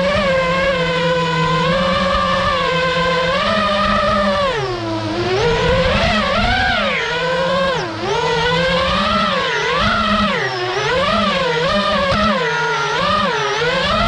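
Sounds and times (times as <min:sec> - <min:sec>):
drone motors whining: 0:00.0 - 0:14.0.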